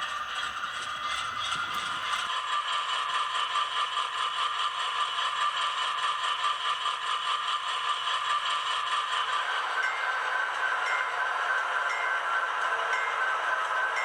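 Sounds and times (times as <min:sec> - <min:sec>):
thin diesel engine sound from speakers: 0:00.0 - 0:02.3
clatter of wheels on rails: 0:00.0 - 0:02.4.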